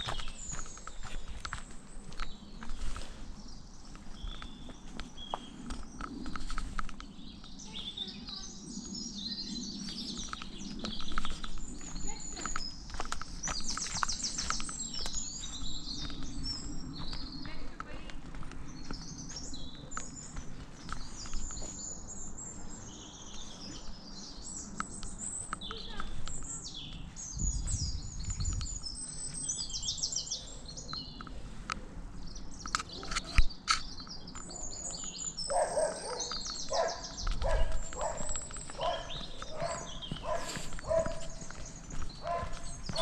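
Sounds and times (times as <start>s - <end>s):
wild birds chirping and trilling: 0.0s - 43.0s
repeated lower bird calls: 32.1s - 43.0s.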